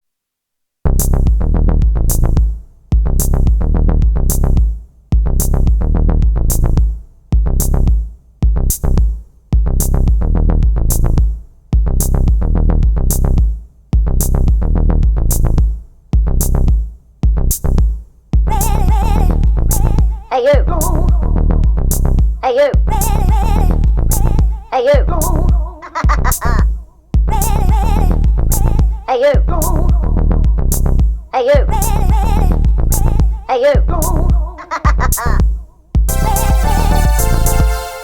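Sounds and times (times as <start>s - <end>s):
deep synth bass: 0.9s - 38.0s
drum machine beat: 1.0s - 38.0s.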